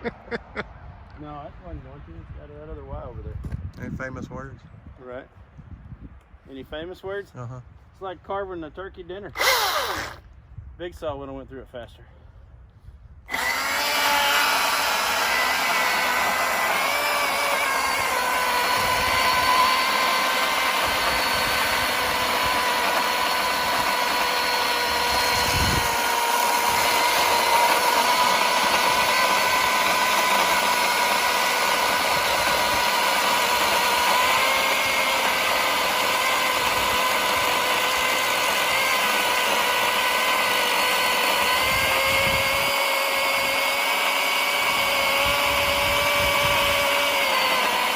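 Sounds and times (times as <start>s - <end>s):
cordless chainsaw cutting log: 9.4s - 10.2s, 13.3s - 47.9s.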